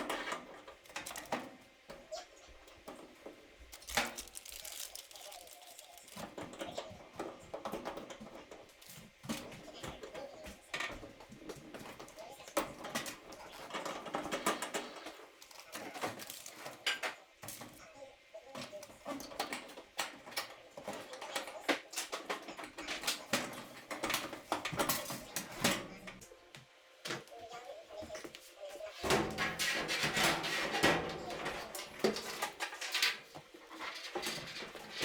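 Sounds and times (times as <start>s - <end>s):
tools and metal parts clinking: 3.8s - 7.0s.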